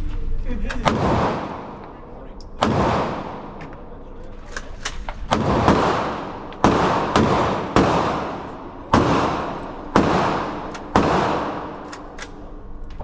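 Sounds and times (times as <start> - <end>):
gunshots echoing: 0.8 - 1.9, 2.5 - 3.6, 5.2 - 12.5.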